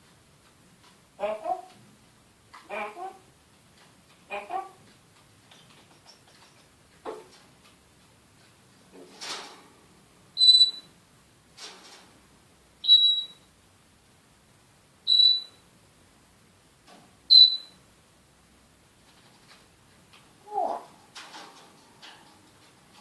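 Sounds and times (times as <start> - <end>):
parrot whistling: 12.8 - 13.4, 15.1 - 15.6, 17.3 - 17.8.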